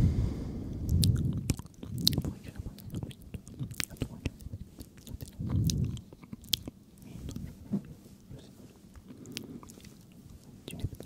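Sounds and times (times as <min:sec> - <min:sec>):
wet lip and tongue clicks: 0:00.9 - 0:07.5.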